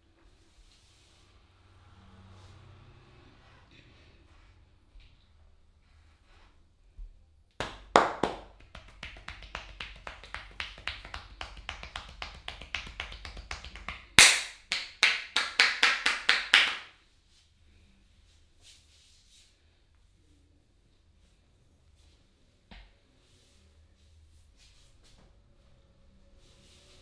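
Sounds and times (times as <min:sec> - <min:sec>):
hands slapping on a head: 0:07.6 - 0:16.9.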